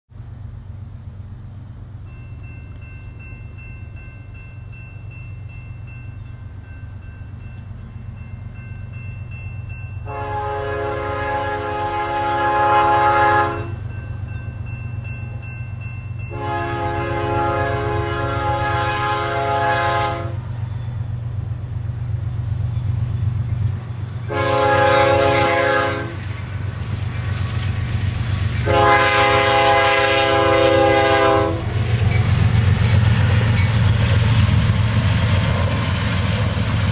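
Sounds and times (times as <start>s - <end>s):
low rumble of locomotives: 0.1s - 36.9s
train air horn: 10.0s - 13.8s, 16.3s - 20.5s, 24.3s - 26.3s, 28.6s - 31.8s.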